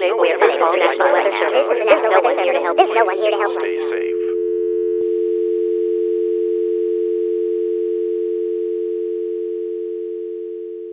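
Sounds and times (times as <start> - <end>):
telephone dial tone: 4.3 - 10.9.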